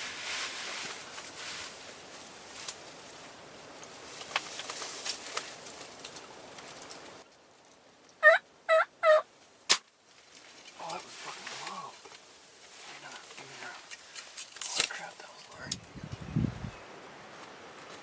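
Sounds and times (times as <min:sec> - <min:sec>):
rustling with small clicks: 0:03.8 - 0:07.8
turkey yelps: 0:08.2 - 0:09.3
sharp crack: 0:09.7 - 0:10.0.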